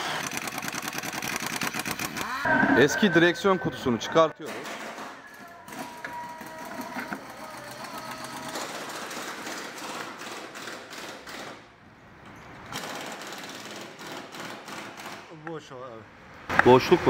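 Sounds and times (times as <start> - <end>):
power tool rattling: 0.0 - 2.3, 12.7 - 15.3.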